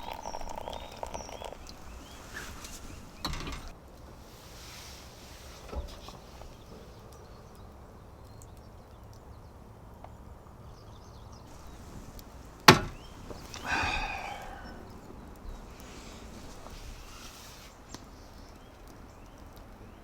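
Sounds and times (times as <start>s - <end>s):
sharp knock: 12.7s - 13.1s.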